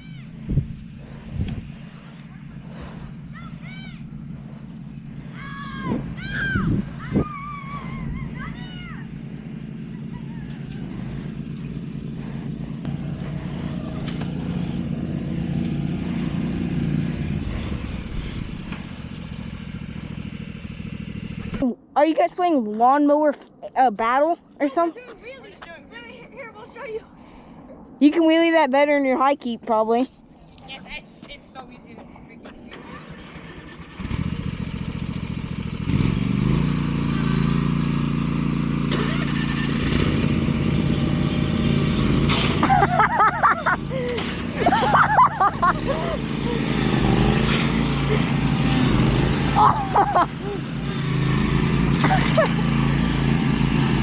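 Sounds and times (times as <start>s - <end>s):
riding lawn mower engine: 0.0s - 21.7s, 32.5s - 54.0s.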